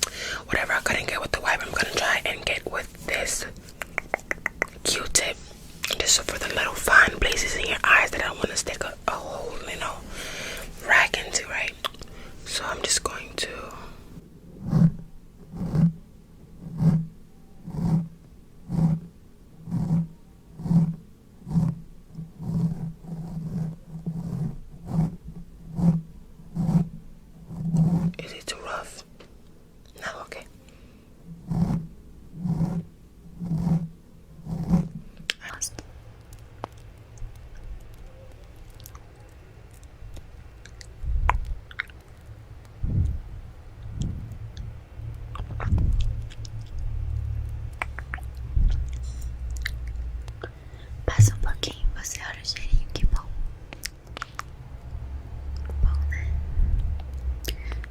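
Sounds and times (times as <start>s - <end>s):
wet mouth clicks and smacks: 2.5s - 6.0s, 39.7s - 42.2s, 47.7s - 50.5s, 53.7s - 54.5s
soft low pulses: 42.4s - 52.2s
low bump: 51.2s - 52.0s.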